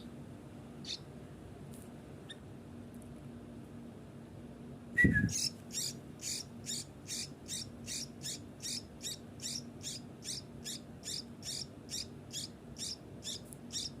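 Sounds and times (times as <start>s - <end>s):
bird chick calling: 5.0s - 14.0s.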